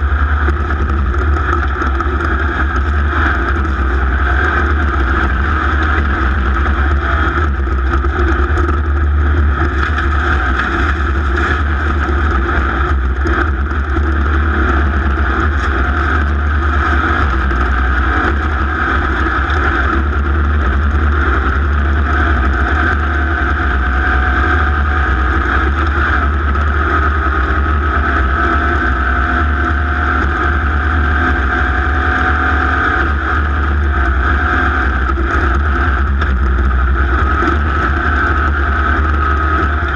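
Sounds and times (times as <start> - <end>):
racing engine running hard: 0.0 - 39.9.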